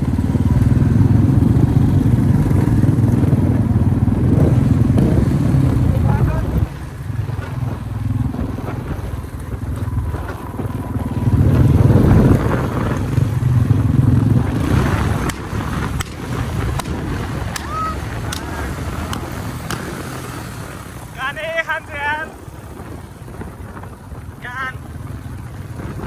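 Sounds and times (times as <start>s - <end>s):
motorcycle engine running: 0.0s - 26.0s
faint sharp ticks: 18.3s - 20.0s.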